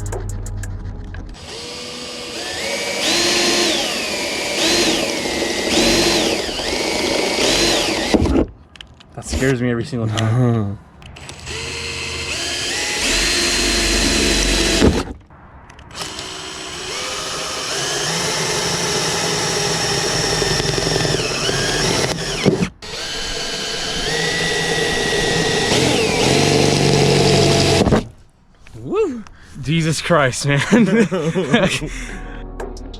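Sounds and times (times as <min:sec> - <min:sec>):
power drill boring through metal: 0:01.4 - 0:08.5, 0:11.2 - 0:15.1, 0:15.9 - 0:28.1.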